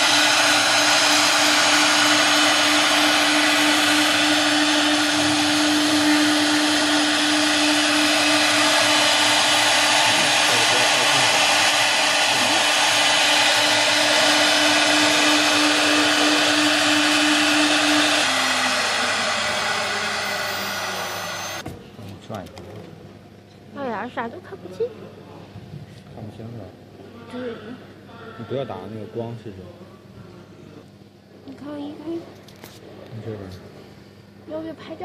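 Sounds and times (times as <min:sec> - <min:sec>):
cnc router spindle whining: 0:00.0 - 0:21.6.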